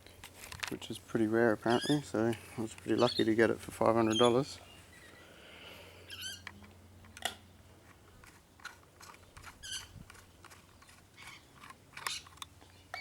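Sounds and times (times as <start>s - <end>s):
rifle parts clicking and tapping: 0.2s - 0.9s, 6.4s - 13.0s.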